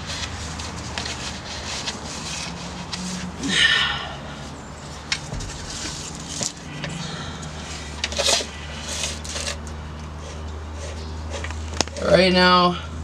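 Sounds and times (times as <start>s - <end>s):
steady low hum: 0.0s - 13.0s
car jack scraping and knocking: 4.8s - 11.9s.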